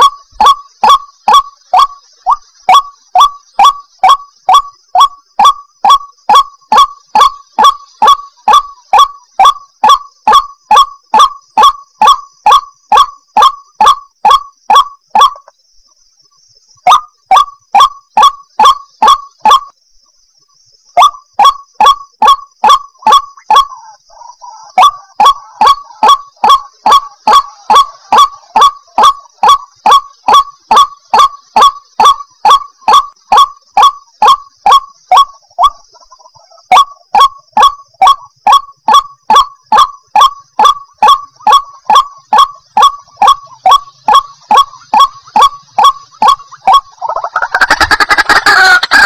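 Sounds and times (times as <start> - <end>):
bird calling repeatedly: 0.0 - 49.0.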